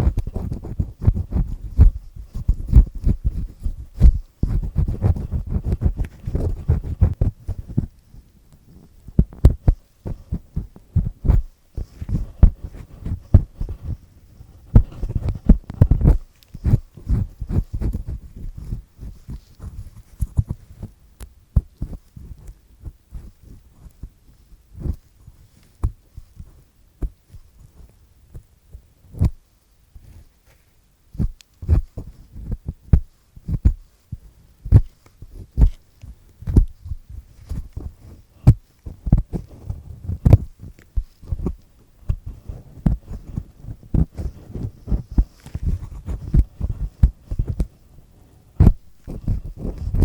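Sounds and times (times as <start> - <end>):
earpick scratching earwax: 0.0 - 28.4, 29.1 - 29.4, 30.0 - 47.8, 48.6 - 50.0
dull low thumps: 48.6 - 50.0.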